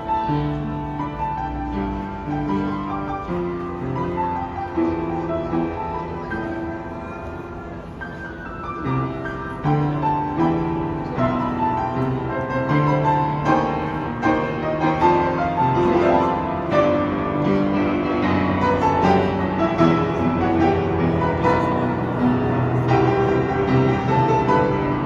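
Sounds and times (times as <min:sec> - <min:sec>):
piano melody and chords: 0:00.0 - 0:25.0.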